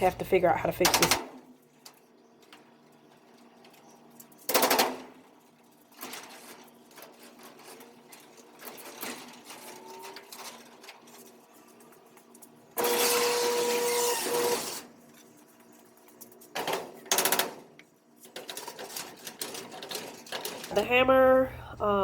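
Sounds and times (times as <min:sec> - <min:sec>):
rapid mechanical clatter: 0:00.7 - 0:15.5, 0:16.2 - 0:20.7.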